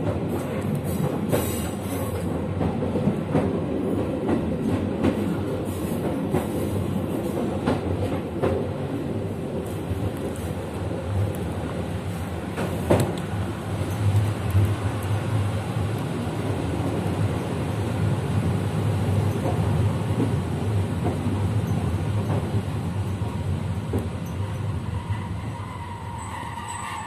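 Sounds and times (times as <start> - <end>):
sharp clack of train wheels: 0.0 - 8.7, 12.5 - 14.8
train wheels rumbling on track: 0.0 - 27.0.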